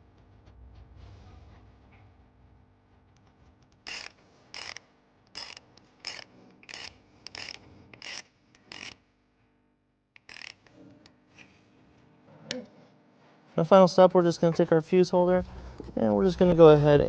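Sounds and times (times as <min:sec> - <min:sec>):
ratchet clicking: 0:03.8 - 0:09.0, 0:10.2 - 0:10.7.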